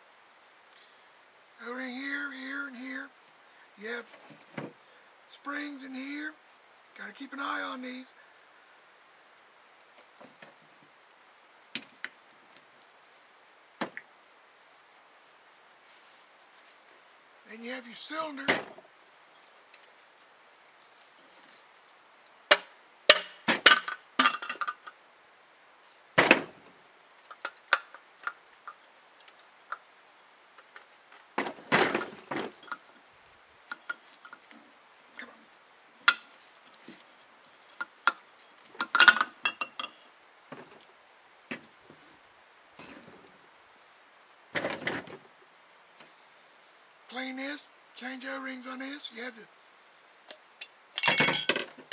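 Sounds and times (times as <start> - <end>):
metal parts clinking: 51.0 - 51.8.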